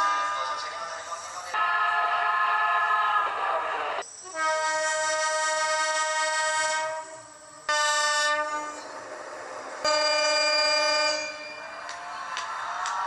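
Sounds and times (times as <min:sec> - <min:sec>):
train horn blasts: 0:04.3 - 0:08.8, 0:09.9 - 0:11.6.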